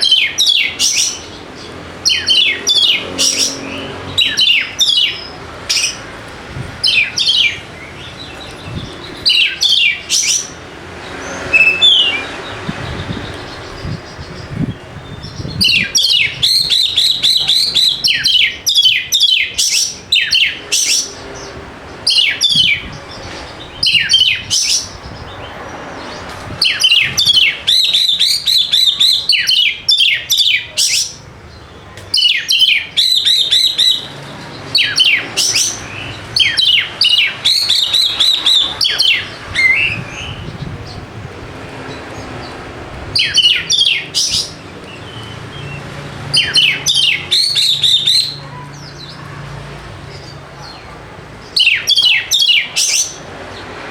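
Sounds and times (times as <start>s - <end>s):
bird singing whistled song: 0.0s - 1.3s, 6.8s - 10.5s, 11.5s - 21.1s, 22.1s - 23.0s, 23.7s - 25.4s, 26.6s - 31.2s, 32.2s - 34.1s, 34.8s - 40.6s, 43.2s - 48.4s, 51.6s - 53.2s.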